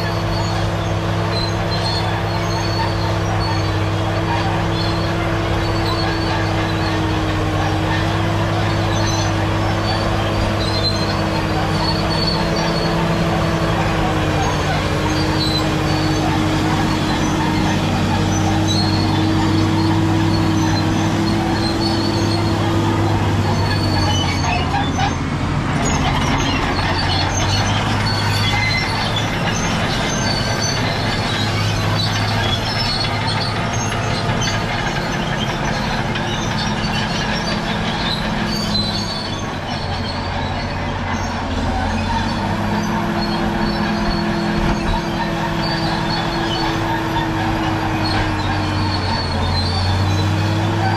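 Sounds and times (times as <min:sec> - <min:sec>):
bulldozer diesel engine: 0:00.0 - 0:50.9
steel tracks squealing and clanking: 0:00.0 - 0:50.9.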